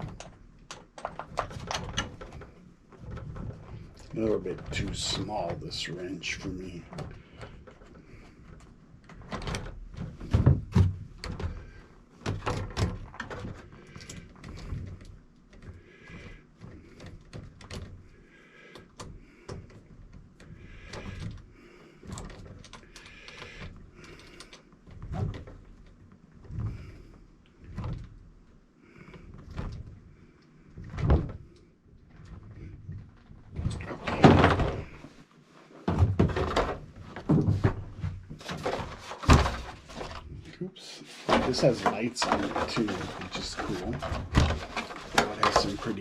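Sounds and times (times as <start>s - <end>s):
clicks and knocks of hand work: 0.0s - 5.6s, 41.1s - 46.0s
plastic parts handled: 35.8s - 46.0s.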